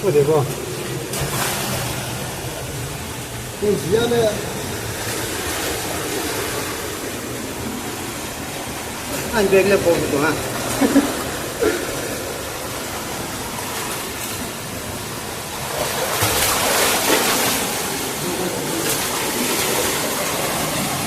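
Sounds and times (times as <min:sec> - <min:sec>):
running water rushing: 0:00.0 - 0:21.0.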